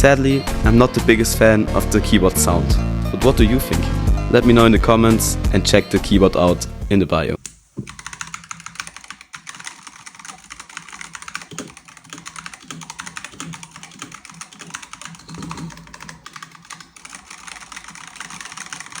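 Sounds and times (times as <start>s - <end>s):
fast keyboard typing: 7.8s - 19.0s
deeper keyboard knock: 11.2s - 16.8s.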